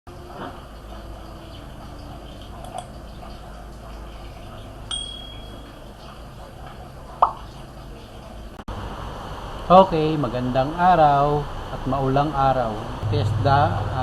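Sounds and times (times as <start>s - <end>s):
low background hum: 0.1s - 14.0s
high ding: 4.9s - 5.8s.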